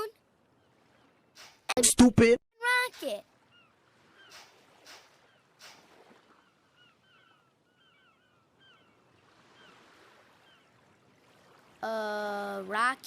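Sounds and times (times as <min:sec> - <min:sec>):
seagulls calling: 0:02.8 - 0:10.9.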